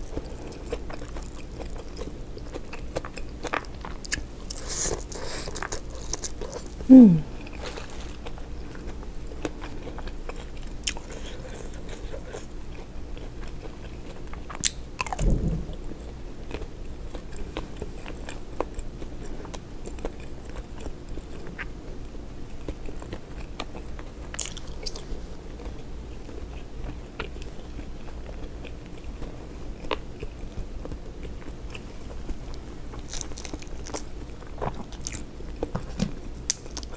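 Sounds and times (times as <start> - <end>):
chewing with crunches: 0.0 - 36.9.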